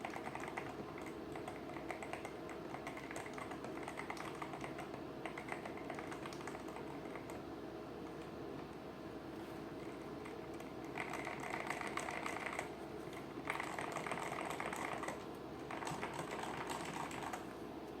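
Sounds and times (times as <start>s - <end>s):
typing on mechanical keyboard: 0.0s - 7.4s, 10.6s - 17.5s.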